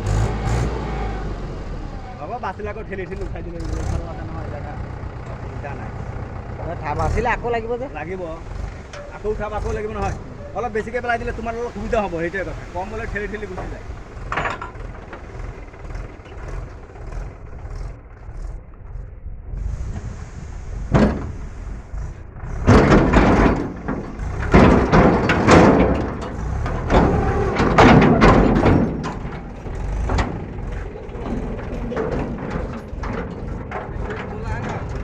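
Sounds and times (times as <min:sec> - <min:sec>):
diesel engine running: 0:00.0 - 0:35.0
soil and stones crashing into metal trolley: 0:07.9 - 0:16.8, 0:22.5 - 0:35.0.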